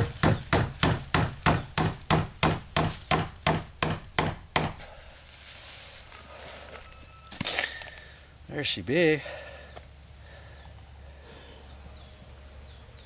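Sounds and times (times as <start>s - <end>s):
hammer driving a nail into wood: 0.0s - 4.8s.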